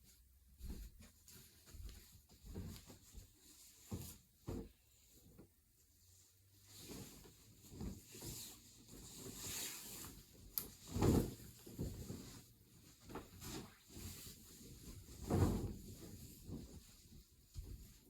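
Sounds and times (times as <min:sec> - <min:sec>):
fabric rustling: 0:00.0 - 0:18.0.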